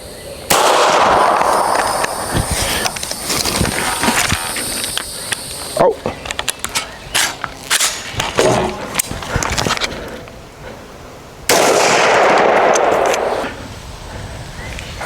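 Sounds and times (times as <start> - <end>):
pistol shots: 0.5 - 3.2, 11.5 - 13.4.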